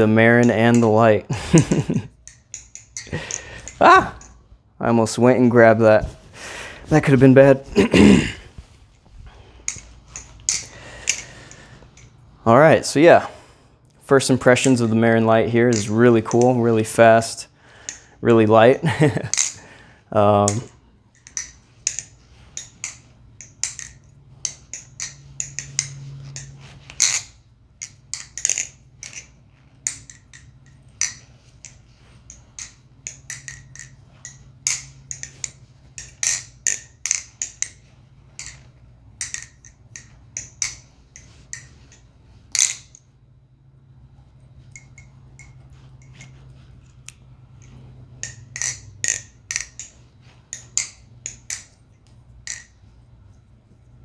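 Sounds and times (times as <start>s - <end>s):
balisong knife clicks and clacks: 1.6s - 4.3s, 20.4s - 43.0s, 47.0s - 52.8s.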